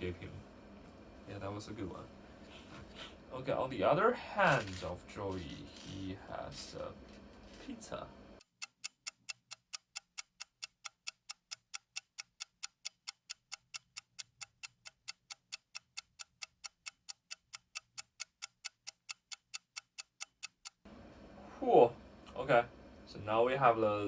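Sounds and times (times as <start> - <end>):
clock ticking: 8.4 - 20.8.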